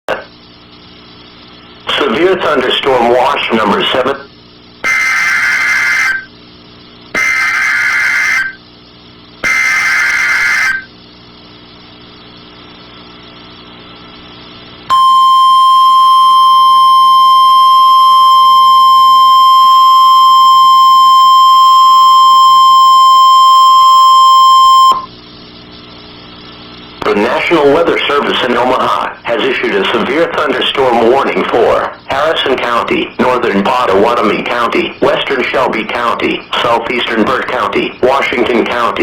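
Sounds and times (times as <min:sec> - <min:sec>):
radio hiss: 0:00.1 - 0:14.9, 0:25.0 - 0:39.0
buzzy digital data squeals: 0:04.8 - 0:06.3, 0:07.1 - 0:08.6, 0:09.4 - 0:10.9
steady loud alarm tone: 0:04.8 - 0:06.4, 0:07.1 - 0:08.6, 0:09.4 - 0:10.9, 0:14.9 - 0:25.1.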